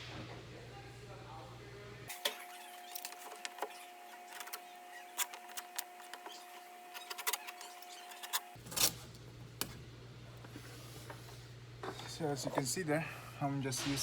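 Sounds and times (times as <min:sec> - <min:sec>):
tape rasp: 0:02.2 - 0:08.6.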